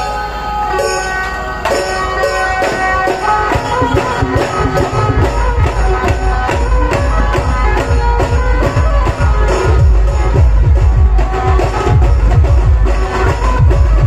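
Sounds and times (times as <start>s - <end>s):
heavy bass beat: 3.1s - 14.0s.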